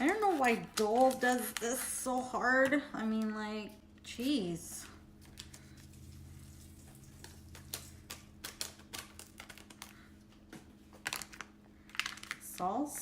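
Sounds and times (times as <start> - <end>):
hands handling plastic packets: 0.0 - 3.4, 4.8 - 13.0
low steady hum: 0.0 - 13.0.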